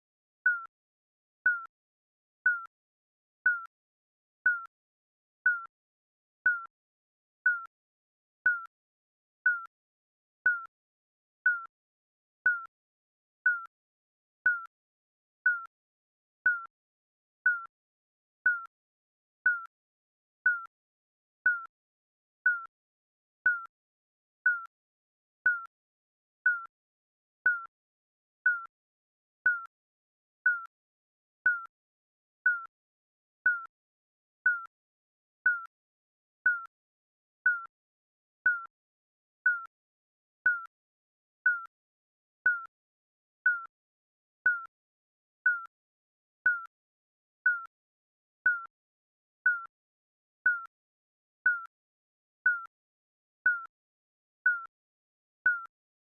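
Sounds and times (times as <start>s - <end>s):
electronic timer beeps: 0.5s - 0.7s, 1.5s - 1.7s, 2.5s - 2.7s, 3.5s - 3.7s, 4.5s - 4.7s, 5.5s - 5.7s, 6.5s - 6.7s, 7.5s - 7.7s, 8.5s - 8.7s, 9.5s - 9.7s, 10.5s - 10.7s, 11.5s - 11.7s, 12.5s - 12.7s, 13.5s - 13.7s, 14.5s - 14.7s, 15.5s - 15.7s, 16.5s - 16.7s, 17.5s - 17.7s, 18.5s - 18.7s, 19.5s - 19.7s, 20.5s - 20.7s, 21.5s - 21.7s, 22.5s - 22.7s, 23.5s - 23.7s, 24.5s - 24.7s, 25.5s - 25.7s, 26.5s - 26.7s, 27.5s - 27.7s, 28.5s - 28.7s, 29.4s - 29.7s, 30.5s - 30.7s, 31.5s - 31.7s, 32.5s - 32.7s, 33.5s - 33.7s, 34.5s - 34.7s, 35.5s - 35.7s, 36.5s - 36.7s, 37.5s - 37.7s, 38.4s - 38.7s, 39.4s - 39.7s, 40.4s - 40.7s, 41.5s - 41.7s, 42.4s - 42.7s, 43.5s - 43.7s, 44.4s - 44.7s, 45.5s - 45.7s, 46.4s - 46.7s, 47.4s - 47.7s, 48.4s - 48.7s, 49.5s - 49.7s, 50.4s - 50.7s, 51.5s - 51.7s, 52.5s - 52.7s, 53.4s - 53.7s, 54.5s - 54.7s, 55.5s - 55.7s.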